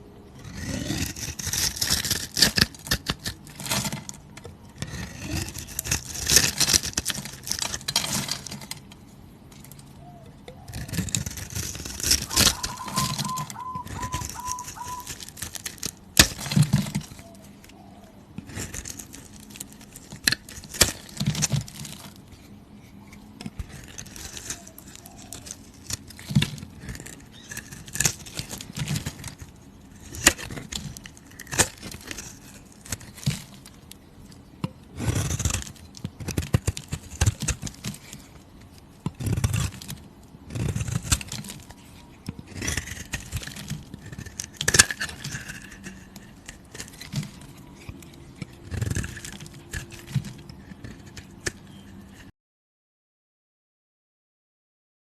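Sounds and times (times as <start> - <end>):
scraping and crinkling handling: 0.5 - 52.3.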